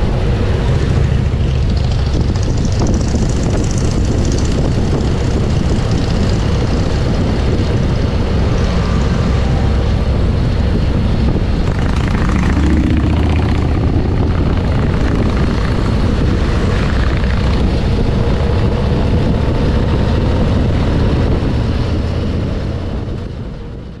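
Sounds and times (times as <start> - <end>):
motorcycle engine running: 0.0 - 8.8, 9.7 - 23.2
wind rushing over microphone: 0.0 - 24.0.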